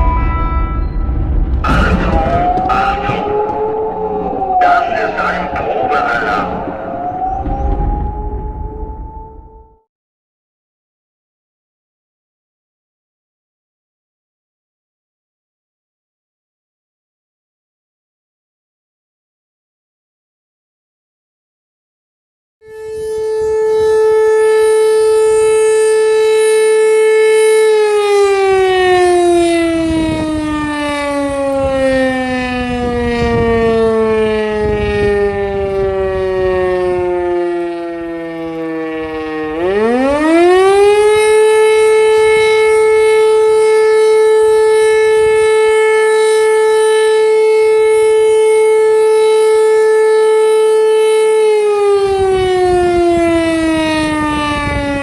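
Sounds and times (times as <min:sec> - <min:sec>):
motor siren wailing: 0:00.0 - 0:09.9, 0:22.6 - 0:55.0.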